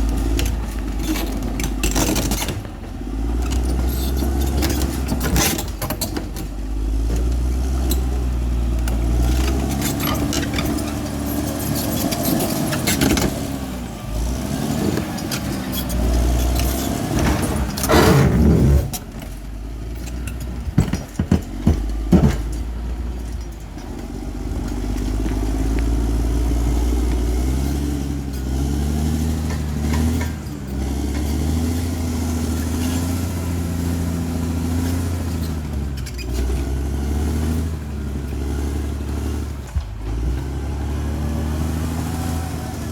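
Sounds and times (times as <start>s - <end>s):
bulldozer engine under load: 0.0s - 42.9s.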